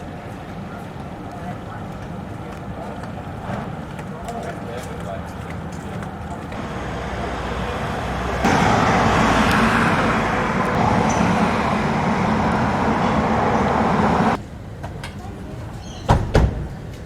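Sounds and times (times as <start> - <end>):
road traffic rumble: 5.1 - 14.4
vehicle passing: 6.6 - 14.4.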